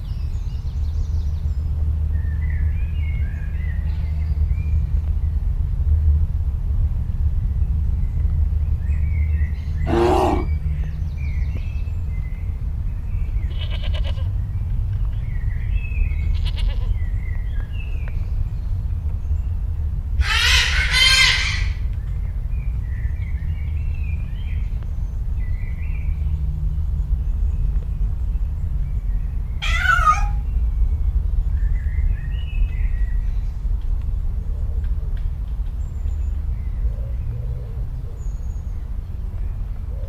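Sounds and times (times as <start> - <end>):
farm animal bleating: 9.9 - 10.5, 29.6 - 30.4.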